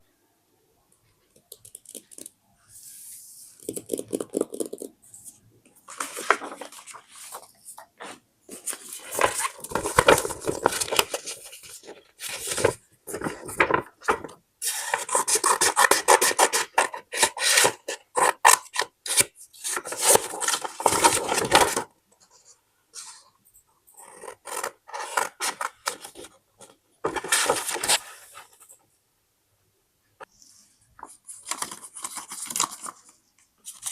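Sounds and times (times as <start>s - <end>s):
paper rustling and rubbing: 5.2s - 18.6s, 27.0s - 28.5s.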